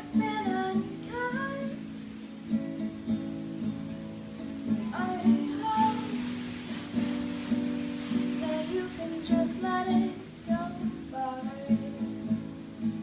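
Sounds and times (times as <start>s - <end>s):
person singing: 0.0s - 1.9s, 4.8s - 6.8s, 8.3s - 13.0s
acoustic guitar strumming: 0.0s - 13.0s.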